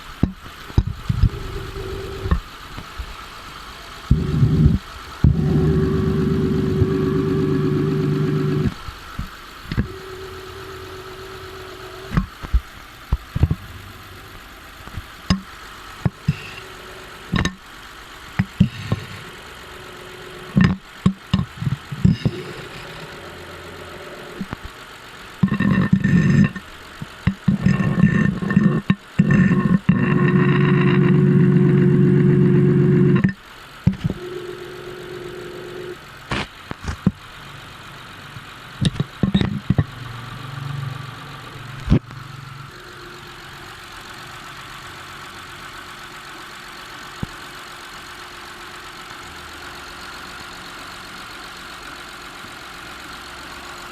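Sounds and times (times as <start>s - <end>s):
sharp clicks and knocks: 0.0s - 2.9s, 4.1s - 10.0s, 11.4s - 13.7s, 14.4s - 16.7s, 17.3s - 17.6s, 18.4s - 19.4s, 20.4s - 23.4s, 25.4s - 34.2s, 36.3s - 37.2s, 38.4s - 40.0s
car engine idling hum: 0.0s - 53.9s.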